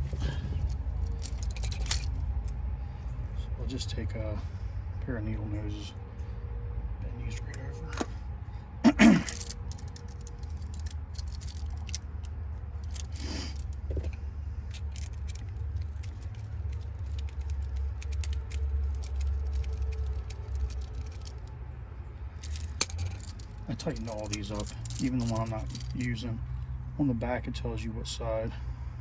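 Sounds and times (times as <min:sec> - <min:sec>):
steady low rumble: 0:00.0 - 0:29.0
pliers clicking on wire nuts: 0:14.7 - 0:21.4, 0:22.4 - 0:26.2.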